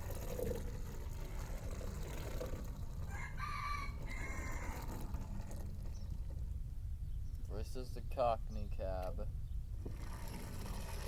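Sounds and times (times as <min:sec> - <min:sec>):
rooster crowing: 0:03.1 - 0:04.9.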